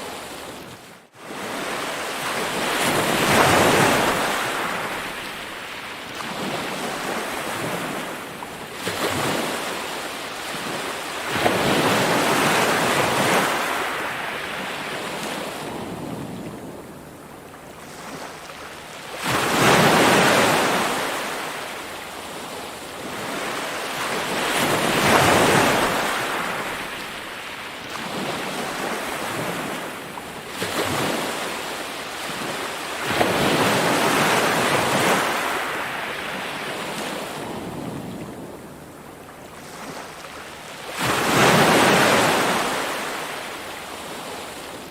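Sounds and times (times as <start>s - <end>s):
ocean waves breaking: 0.0s - 44.9s.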